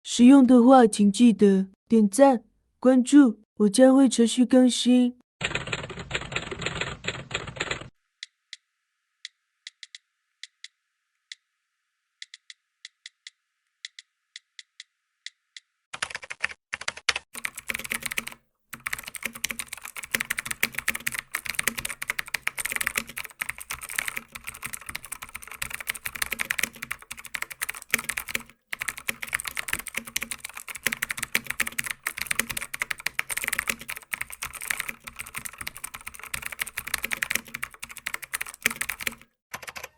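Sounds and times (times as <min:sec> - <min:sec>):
computer keyboard typing: 0:05.4 - 0:07.9, 0:16.0 - 0:39.9.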